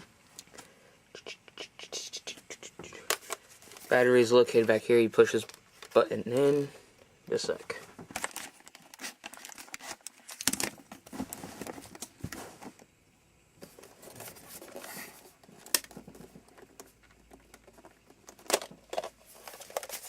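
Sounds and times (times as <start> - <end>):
plastic handling clicks and rustles: 3.0 - 6.7, 7.3 - 12.9, 13.6 - 20.0.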